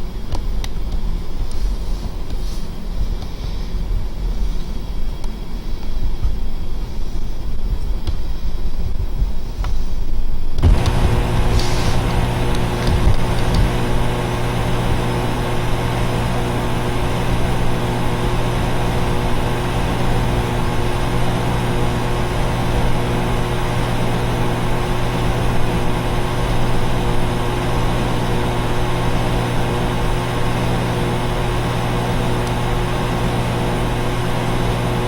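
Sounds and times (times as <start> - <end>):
air conditioner units humming: 10.2 - 35.0
fans rushing: 10.6 - 35.0.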